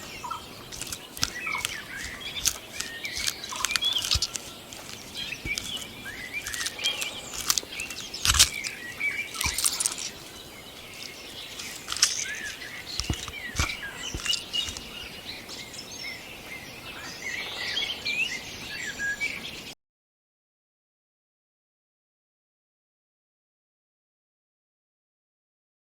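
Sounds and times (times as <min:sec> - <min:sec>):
light steady hiss: 0:00.0 - 0:19.7
small birds chirping: 0:00.0 - 0:19.8
sharp ticks: 0:00.7 - 0:08.8.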